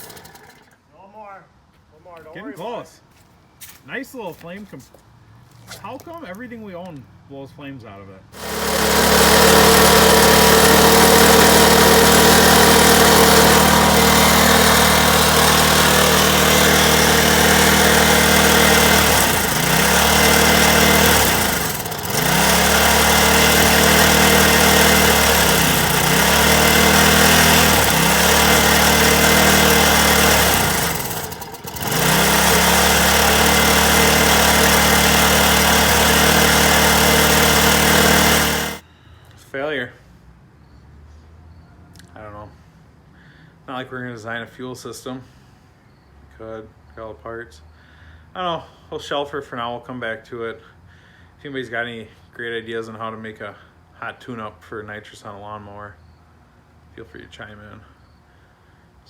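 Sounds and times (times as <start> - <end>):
lawn mower engine running: 0.0 - 0.8, 8.4 - 38.8.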